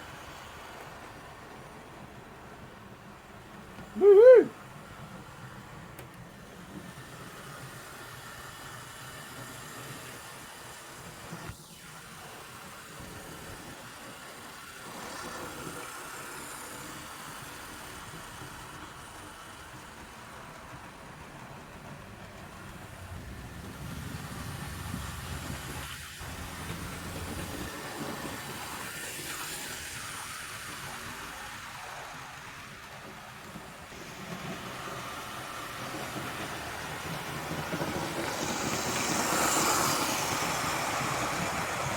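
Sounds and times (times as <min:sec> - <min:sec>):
model train motor whir: 0:00.0 - 0:41.9
wheel rumble on track: 0:20.9 - 0:28.2.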